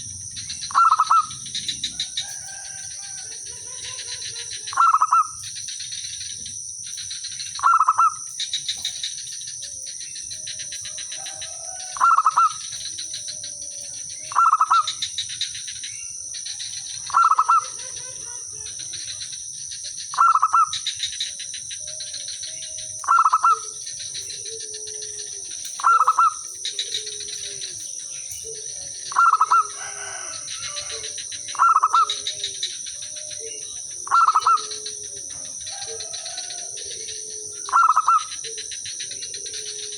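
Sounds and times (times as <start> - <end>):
dove calling loudly: 0.0 - 39.9
faint answering dove calls: 16.6 - 39.9.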